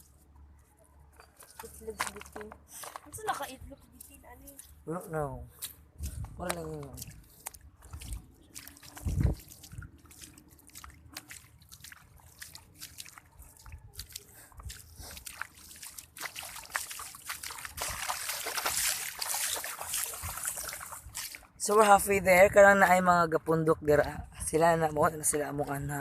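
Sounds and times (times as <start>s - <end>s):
water trickling and splashing: 5.6s - 26.0s.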